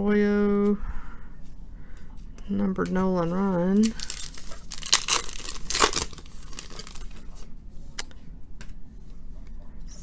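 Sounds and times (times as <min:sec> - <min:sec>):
foil wrapper crinkling: 0:03.8 - 0:07.2.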